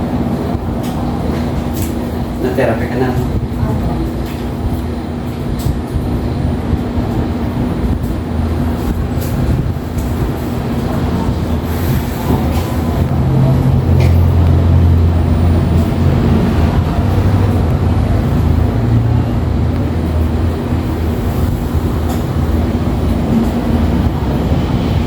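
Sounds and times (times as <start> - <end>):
low motor hum: 0.0 - 25.0.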